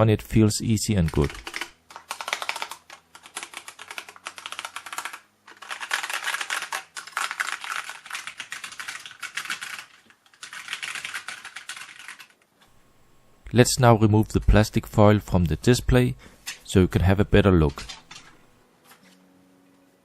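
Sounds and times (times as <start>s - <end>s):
mechanical keyboard typing: 0.9s - 12.4s, 17.6s - 18.4s.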